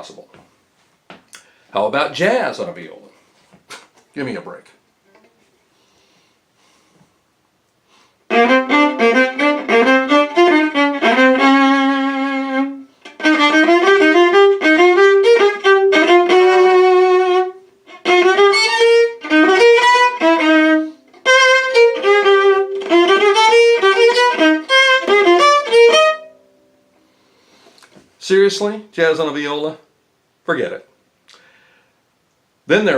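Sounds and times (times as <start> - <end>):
viola playing jazz: 8.3 - 26.5.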